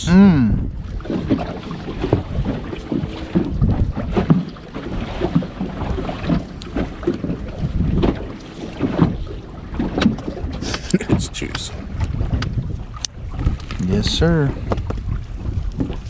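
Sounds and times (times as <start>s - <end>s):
water slapping against hull: 0.0s - 16.0s
wind buffeting microphone: 0.0s - 16.0s.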